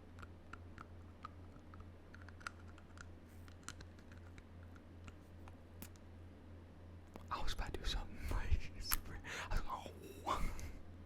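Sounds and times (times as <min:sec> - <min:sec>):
teeth clicking on plastic: 0:00.1 - 0:06.0.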